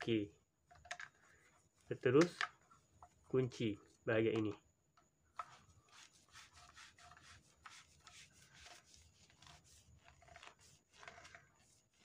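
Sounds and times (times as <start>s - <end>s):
plastic rubbing and scraping: 5.3s - 12.0s.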